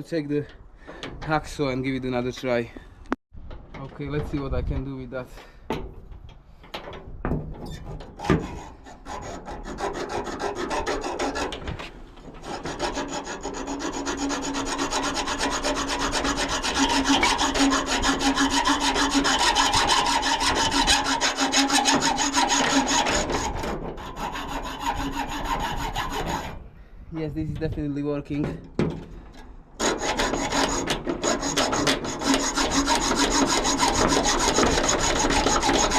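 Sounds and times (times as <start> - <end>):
hacksaw cutting metal: 8.0 - 11.6, 12.3 - 26.6, 29.8 - 35.9
saw knocking on lock: 29.8 - 35.9.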